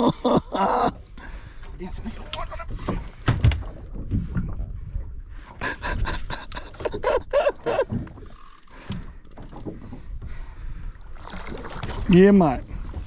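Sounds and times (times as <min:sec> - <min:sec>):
fishing reel clicking and rattling: 0:08.2 - 0:09.8.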